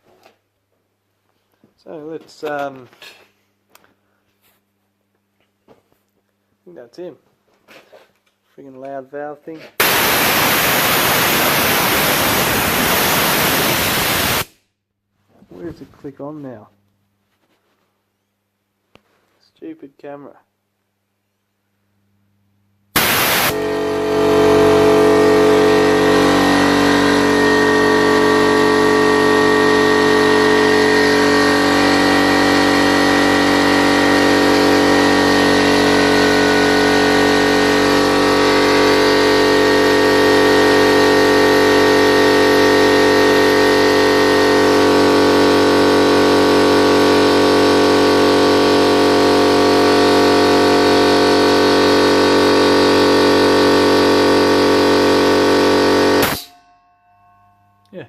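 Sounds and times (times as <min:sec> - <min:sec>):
air compressor running: 0:09.8 - 0:14.6, 0:22.9 - 0:56.5.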